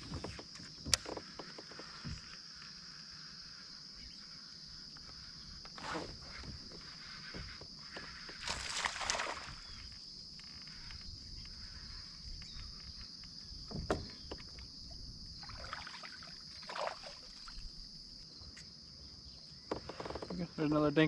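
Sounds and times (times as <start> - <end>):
soft water swishes: 8.4 - 9.9, 15.4 - 17.7.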